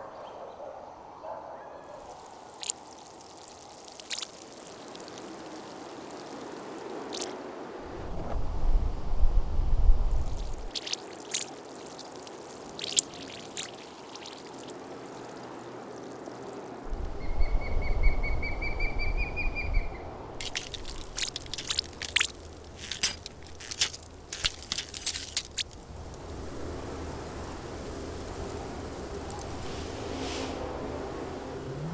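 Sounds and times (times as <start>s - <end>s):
water pouring and trickling: 1.9s - 7.5s, 10.2s - 17.0s, 20.4s - 30.4s
sharp drip-like clicks: 2.0s - 7.5s, 10.3s - 16.8s, 20.4s - 26.3s.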